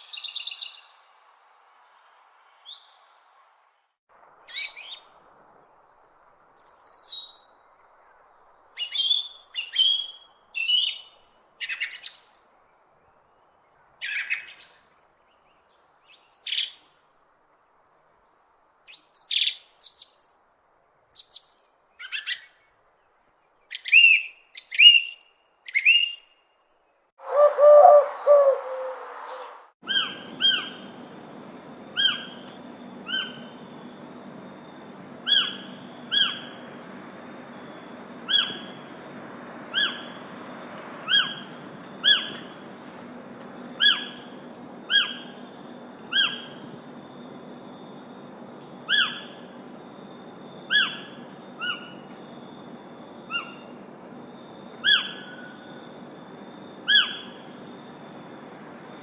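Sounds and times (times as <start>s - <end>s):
lower bird call: 27.2s - 42.8s, 43.7s - 58.4s
birds chirping and singing: 27.3s - 30.8s.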